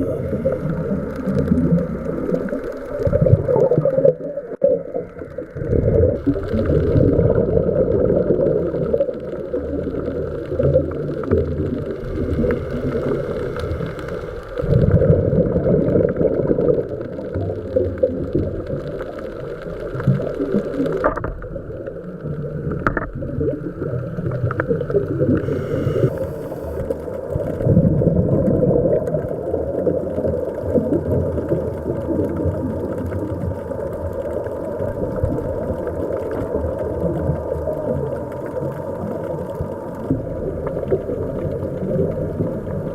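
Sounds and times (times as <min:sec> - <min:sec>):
underwater exhaust bubbles: 0:00.0 - 0:42.9
underwater regulator breathing: 0:11.7 - 0:15.2, 0:25.3 - 0:27.0.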